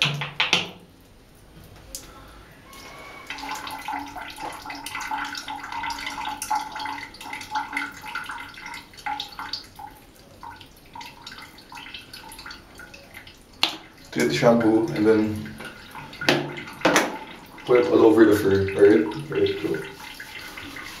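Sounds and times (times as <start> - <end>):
shower water splashing in bathtub: 0.0 - 21.0
water dripping: 0.0 - 21.0.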